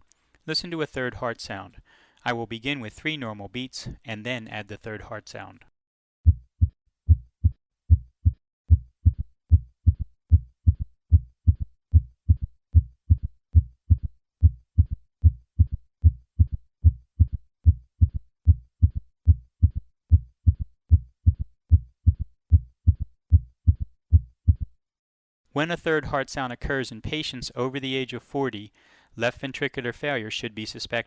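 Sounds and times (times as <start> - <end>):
heartbeat through stethoscope: 6.2 - 24.8.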